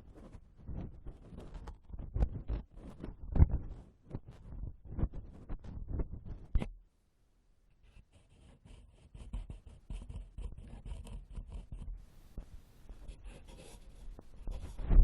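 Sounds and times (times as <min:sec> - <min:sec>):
ear pick scratching: 0:08.0 - 0:15.0.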